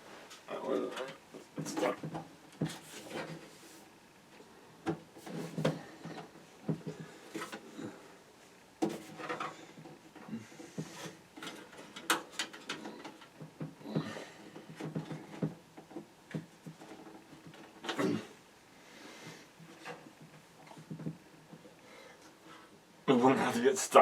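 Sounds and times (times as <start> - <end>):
plastic clicks knocks and rattles: 11.4 - 13.8.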